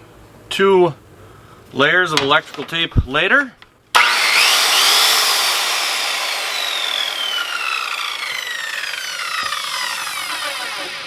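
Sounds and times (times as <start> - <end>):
circular saw motor whine: 4.0 - 11.0.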